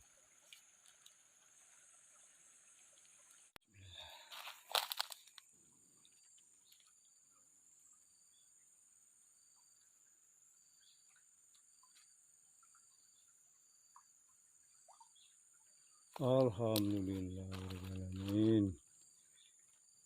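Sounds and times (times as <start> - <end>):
faint bird chirps: 9.3 - 20.0.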